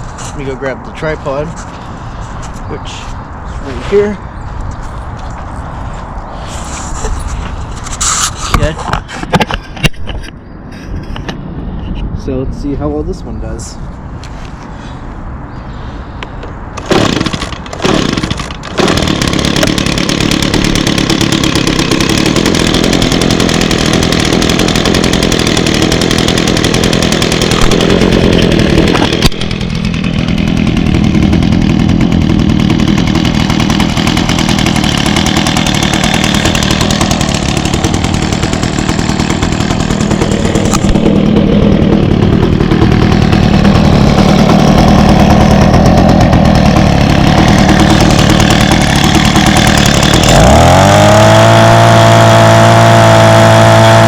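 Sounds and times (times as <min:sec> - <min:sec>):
leaf blower engine starting and running: 0:00.0 - 0:04.3, 0:16.8 - 0:54.0.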